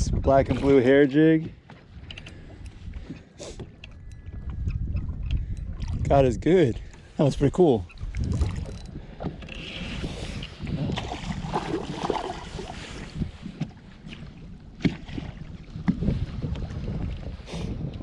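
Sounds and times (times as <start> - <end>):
wind on microphone: 0.0 - 1.0, 1.9 - 18.0
water lapping and splashing: 0.0 - 18.0.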